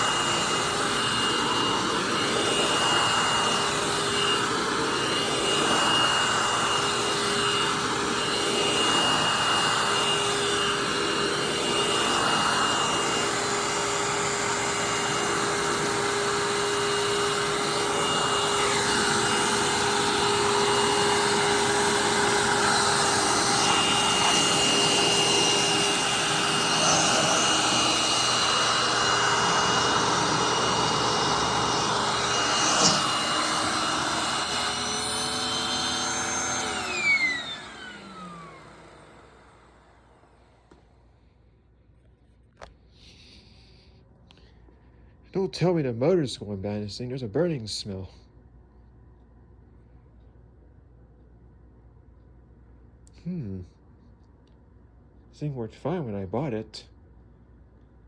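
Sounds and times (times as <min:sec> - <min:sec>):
vacuum cleaner running: 0:00.0 - 0:41.2.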